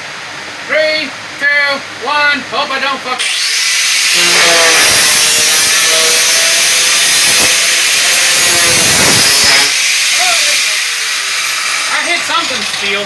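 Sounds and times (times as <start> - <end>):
angle grinder cutting metal: 3.2 - 13.0.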